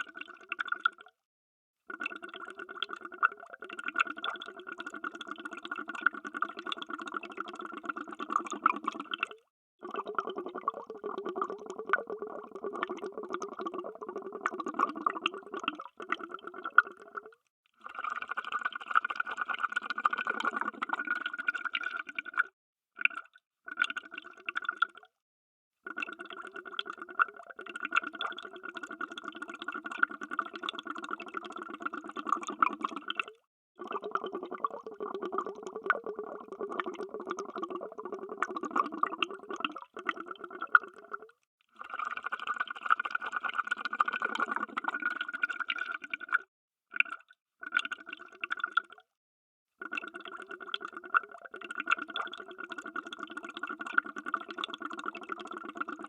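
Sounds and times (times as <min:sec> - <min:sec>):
underwater bubbling: 0:01.9 - 0:17.4, 0:18.1 - 0:22.4, 0:25.9 - 0:49.0.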